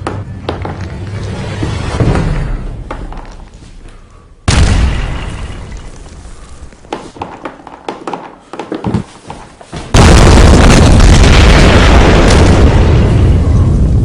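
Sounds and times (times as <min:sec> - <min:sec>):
loud explosion rumbling: 0:04.5 - 0:05.8, 0:09.9 - 0:14.0.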